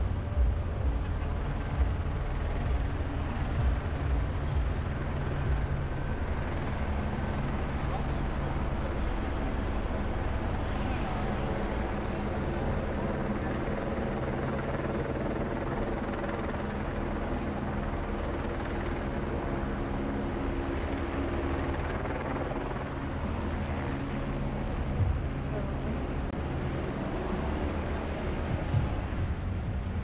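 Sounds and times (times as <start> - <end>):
city street noise: 0.0 - 30.0
low engine drone: 0.0 - 30.0.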